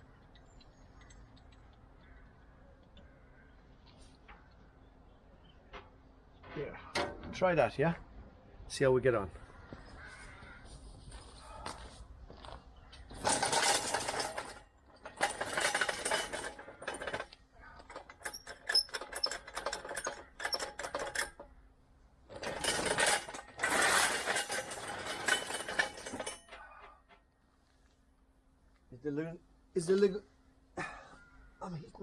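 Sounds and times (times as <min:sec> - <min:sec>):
metallic clinking and rattling: 0:13.1 - 0:21.5, 0:22.3 - 0:27.2.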